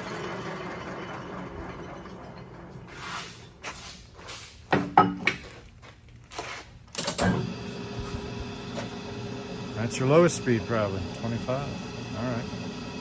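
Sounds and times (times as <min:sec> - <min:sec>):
lathe turning with low hum: 0:00.0 - 0:03.6, 0:07.1 - 0:13.0.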